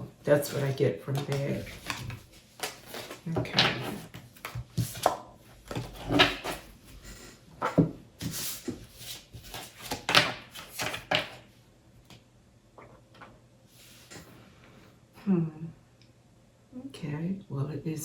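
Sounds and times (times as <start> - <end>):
cards being shuffled: 0.4 - 6.7, 7.6 - 11.4.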